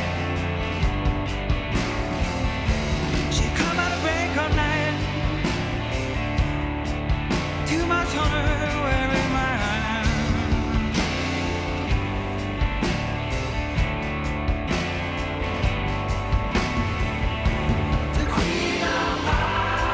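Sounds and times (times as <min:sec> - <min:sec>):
rock song with drums and guitar: 0:00.0 - 0:19.9
wavering vocal melody: 0:18.1 - 0:19.9.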